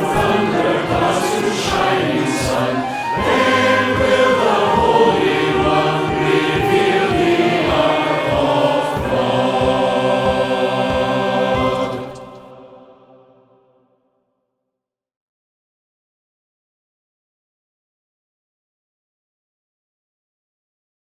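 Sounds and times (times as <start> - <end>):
choir singing: 0.0 - 14.0.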